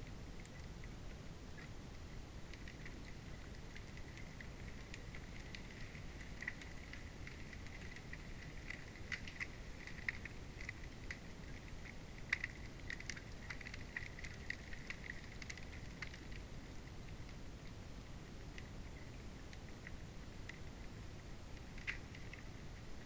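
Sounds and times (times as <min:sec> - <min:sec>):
underwater flowing water rumble: 0:00.0 - 0:23.0
ice crackling clicks: 0:02.5 - 0:16.5, 0:21.6 - 0:22.5.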